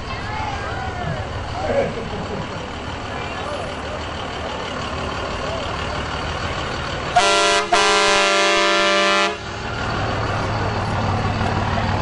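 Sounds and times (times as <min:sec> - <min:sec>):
low traffic rumble: 0:00.0 - 0:12.0
vehicle horn blasts: 0:07.2 - 0:09.4.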